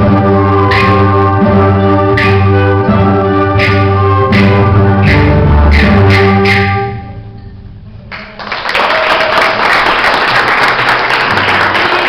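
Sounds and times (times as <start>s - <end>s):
audience applause: 8.1s - 12.0s.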